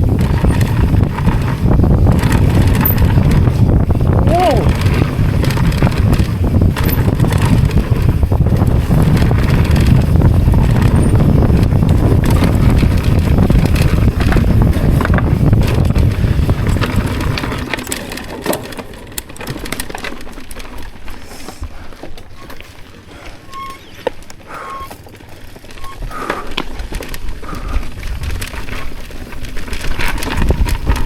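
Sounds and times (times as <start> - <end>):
wind buffeting microphone: 0.0 - 18.2, 25.6 - 31.0
crunching and rattling over rough ground: 0.0 - 31.0.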